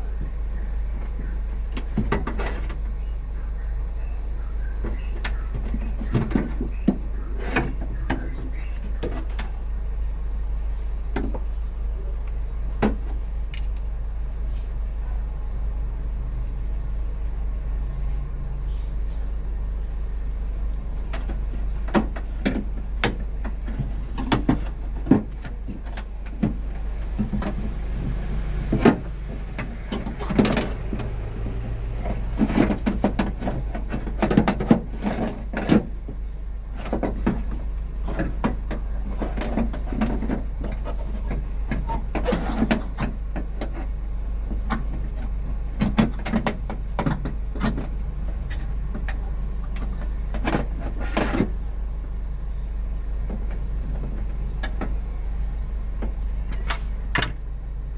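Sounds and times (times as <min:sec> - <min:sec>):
steady low hum: 0:00.0 - 0:57.9.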